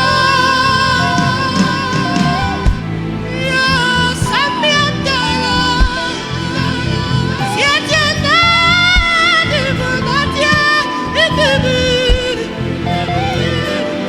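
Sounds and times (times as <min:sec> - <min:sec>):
person singing gospel melody: 0:00.0 - 0:14.0
sustained backing music: 0:00.0 - 0:14.0
deep drum hits: 0:02.5 - 0:02.9, 0:05.8 - 0:06.2, 0:08.9 - 0:09.3, 0:12.1 - 0:12.4.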